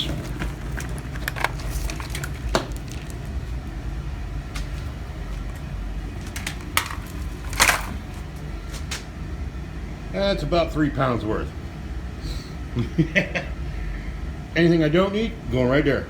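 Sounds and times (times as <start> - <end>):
wires and connectors rustling: 0.0 - 9.1
steady low hum: 0.0 - 16.0
sharp plastic clacks: 6.2 - 8.2.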